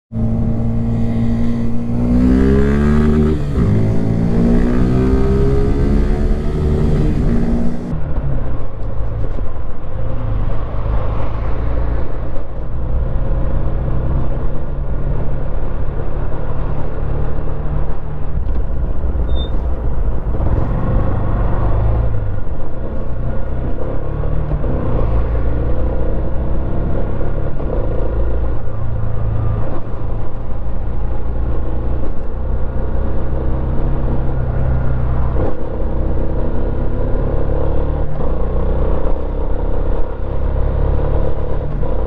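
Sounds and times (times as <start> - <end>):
motorcycle engine revving: 0.1 - 8.0, 18.5 - 22.6.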